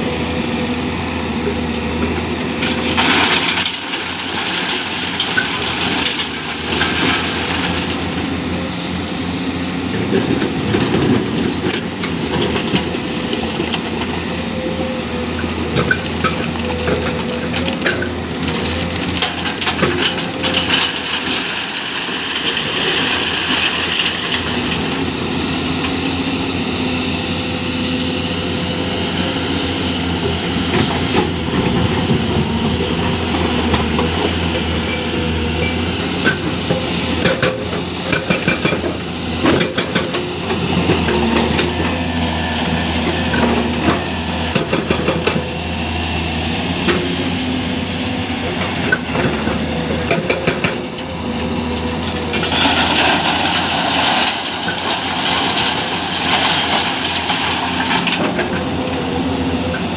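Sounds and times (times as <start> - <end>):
excavator diesel engine running: 0.0 - 59.9.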